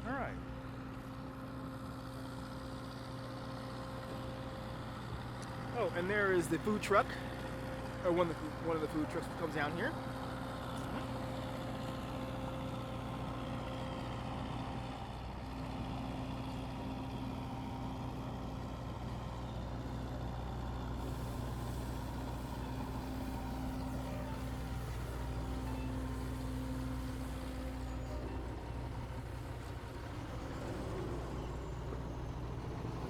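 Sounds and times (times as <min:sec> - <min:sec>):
truck engine idling: 0:05.8 - 0:33.0.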